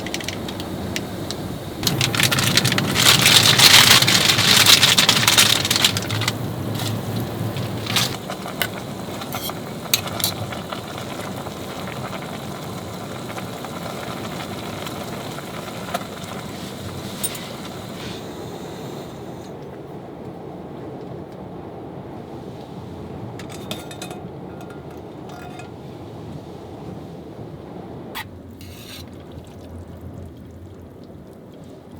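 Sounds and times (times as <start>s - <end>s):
storm wind and snow buffeting car: 0.0s - 19.4s
light clicks and clinks: 23.4s - 25.8s.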